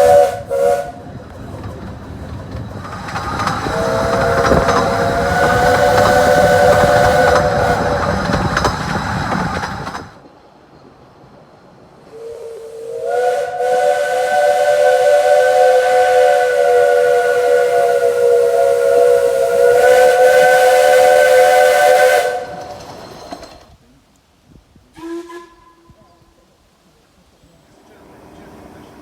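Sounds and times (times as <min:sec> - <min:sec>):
steam locomotive whistle: 0:00.0 - 0:01.2, 0:03.4 - 0:08.7, 0:12.1 - 0:23.1, 0:24.9 - 0:26.3
steam hissing: 0:00.0 - 0:10.2, 0:12.0 - 0:23.8, 0:27.7 - 0:29.0.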